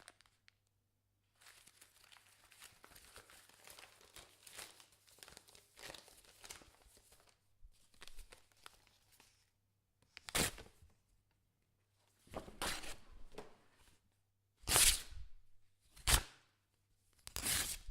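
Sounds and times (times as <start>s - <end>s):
paper crumpling and tearing: 1.4s - 9.3s, 17.3s - 17.9s.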